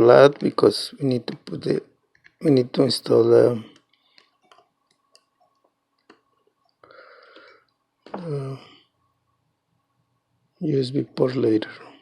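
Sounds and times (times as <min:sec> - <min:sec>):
man's wordless voiced sound: 0:00.0 - 0:03.9, 0:08.1 - 0:08.9, 0:10.6 - 0:12.0.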